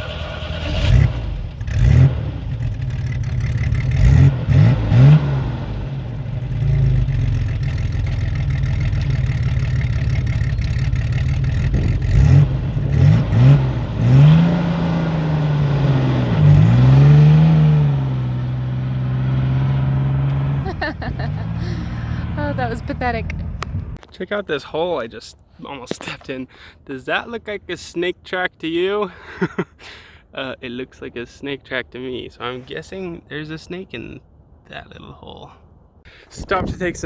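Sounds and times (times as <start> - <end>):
off-road vehicle engine revving: 0.0 - 24.0.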